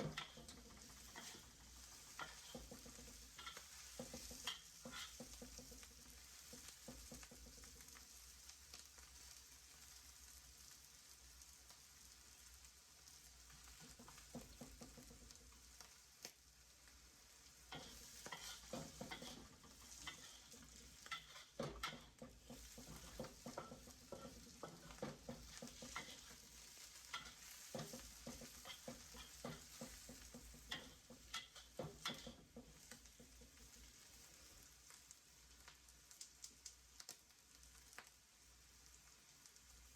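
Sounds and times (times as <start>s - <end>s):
utensil stirring and scraping: 0.0s - 7.4s, 17.7s - 34.0s
food sizzling in a pan: 0.0s - 39.9s.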